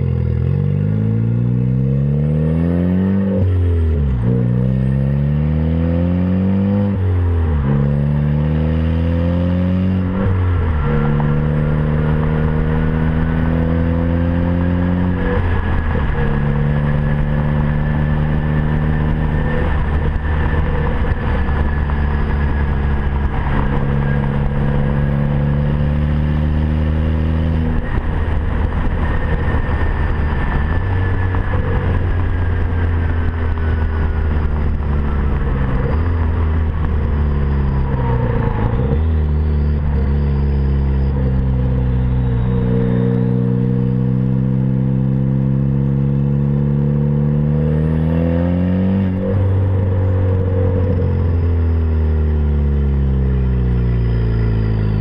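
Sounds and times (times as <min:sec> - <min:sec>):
car engine accelerating: 0:00.0 - 0:55.0.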